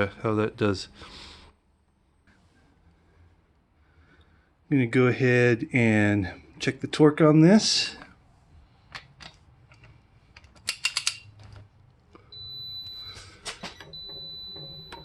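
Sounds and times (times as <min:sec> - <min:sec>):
metal clicks and rattles: 0:08.9 - 0:11.7.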